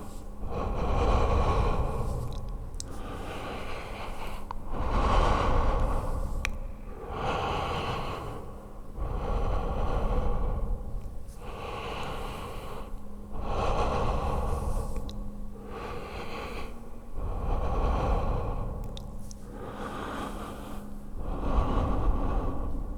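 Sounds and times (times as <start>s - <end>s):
person breathing heavily: 0.0s - 22.9s.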